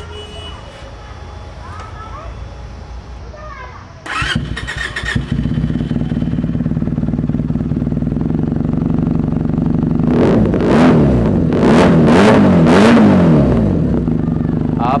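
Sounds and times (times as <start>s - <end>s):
motorcycle engine idling: 0.0s - 11.5s, 13.4s - 15.0s
engine revving with throttle blips: 4.0s - 15.0s.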